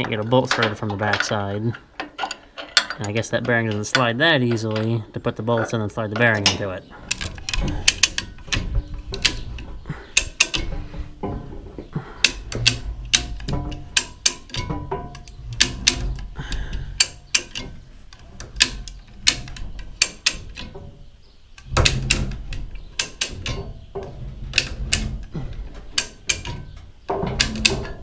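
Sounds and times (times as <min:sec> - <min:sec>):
tools clanking on steel: 0:00.0 - 0:28.0
ratchet clicking: 0:07.1 - 0:10.7, 0:17.0 - 0:17.7, 0:18.4 - 0:20.7.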